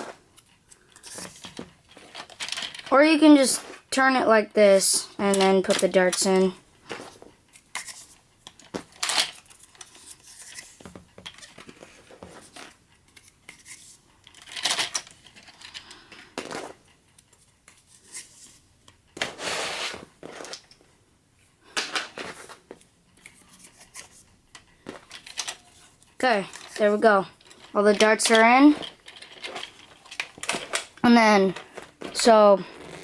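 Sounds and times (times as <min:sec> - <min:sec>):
plastic rubbing and clicking: 0:00.0 - 0:03.0, 0:21.8 - 0:33.0.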